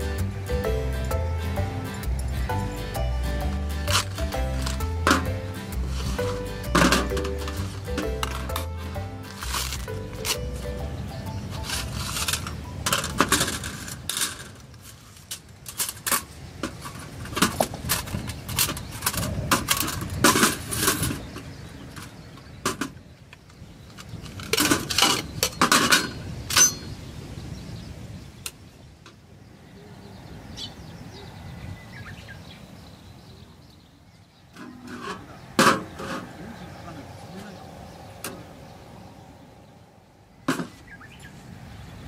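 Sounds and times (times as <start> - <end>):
metal clinking and clattering: 3.8 - 10.6, 11.6 - 21.4, 23.9 - 26.8.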